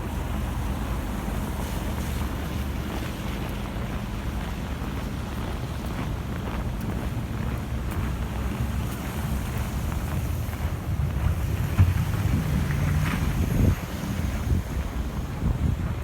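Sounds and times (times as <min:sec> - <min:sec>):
low rumble of street traffic: 0:00.0 - 0:16.0
wind buffeting microphone: 0:08.4 - 0:16.0
passing vehicle engine: 0:11.2 - 0:15.5.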